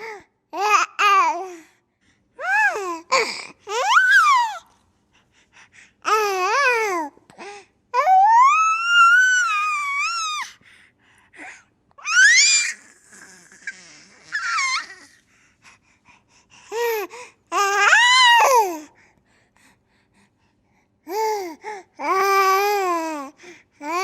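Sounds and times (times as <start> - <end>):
baby squealing: 3.7 - 4.6, 12.0 - 15.1
baby breathing: 14.8 - 17.5.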